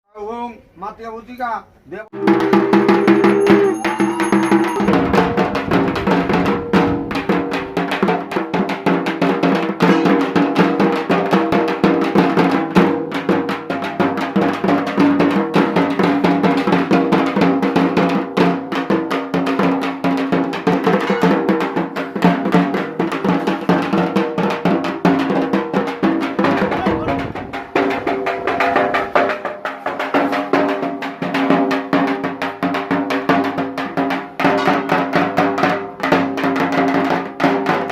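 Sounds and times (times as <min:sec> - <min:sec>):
steady ringing tones: 0:02.2 - 0:07.9
barrel drum beaten with sticks: 0:02.2 - 0:37.9.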